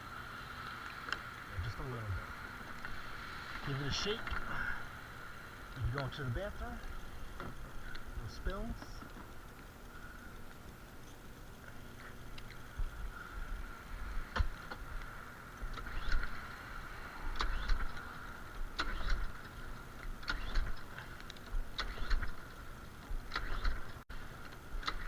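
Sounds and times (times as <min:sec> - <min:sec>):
lawn mower engine cranking: 0:18.8 - 0:25.0.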